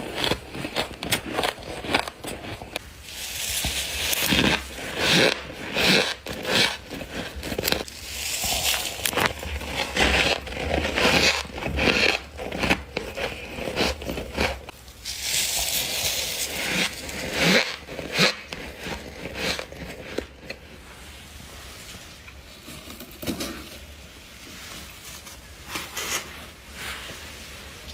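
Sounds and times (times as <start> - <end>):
crunching frost: 0.0 - 20.8.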